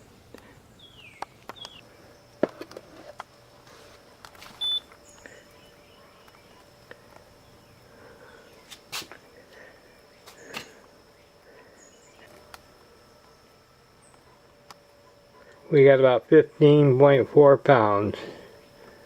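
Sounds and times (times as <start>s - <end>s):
faint steady high whine: 0.0s - 19.0s
high-pitched beep: 4.6s - 4.9s.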